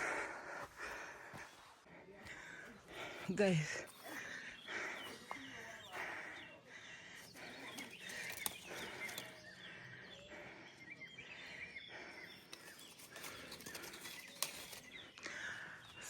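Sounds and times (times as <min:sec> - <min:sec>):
birds chirping softly: 0:00.0 - 0:16.0.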